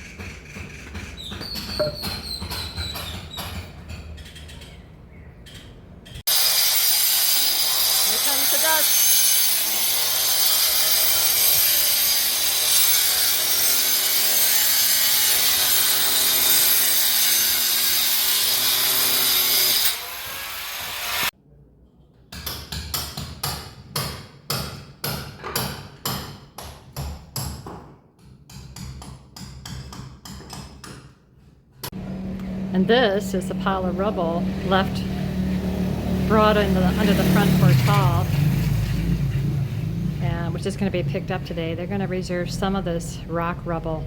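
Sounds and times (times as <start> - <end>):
power tool running: 6.3 - 21.3, 31.9 - 39.1.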